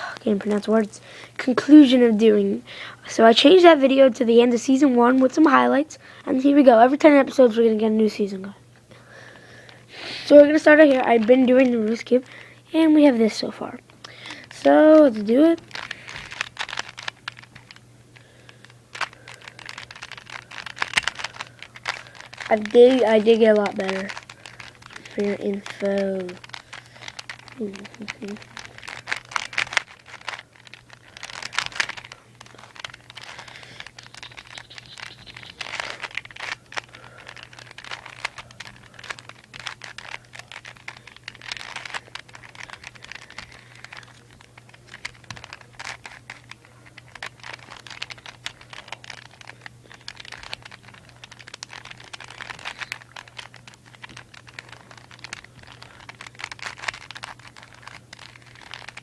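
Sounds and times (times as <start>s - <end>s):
plastic puzzle cube clicking: 15.6s - 59.0s.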